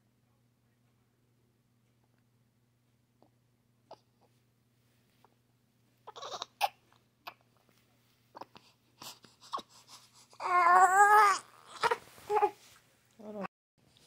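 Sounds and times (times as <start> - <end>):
baby crying: 6.1 - 7.4, 10.4 - 12.6
baby whimpering: 6.1 - 7.4, 8.4 - 12.6.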